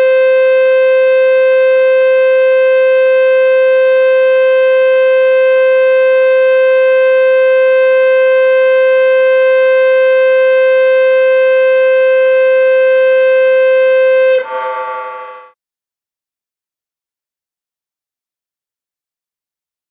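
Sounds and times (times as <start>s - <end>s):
warning siren steady tone: 0.0s - 15.6s.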